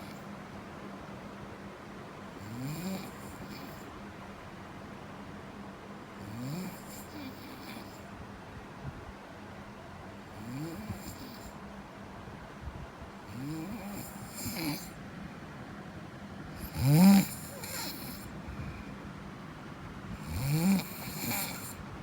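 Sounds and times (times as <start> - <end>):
person snoring: 13.3 - 15.0, 16.6 - 18.3, 20.2 - 21.8.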